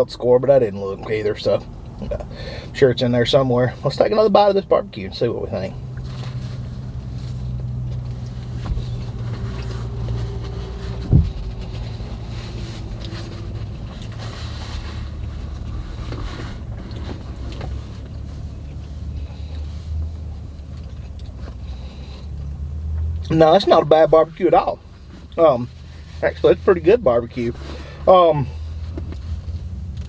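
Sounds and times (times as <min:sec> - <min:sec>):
sharp thump: 0:11.0 - 0:11.5.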